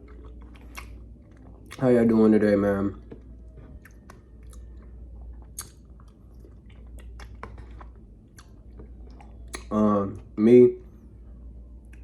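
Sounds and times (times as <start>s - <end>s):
chewing food: 0.0s - 10.3s
wet mouth smacks and clicks: 5.4s - 9.7s.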